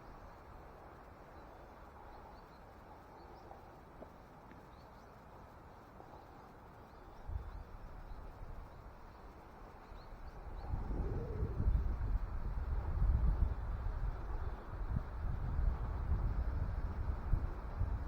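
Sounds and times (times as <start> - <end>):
wind rumbling on microphone: 7.0 - 18.0.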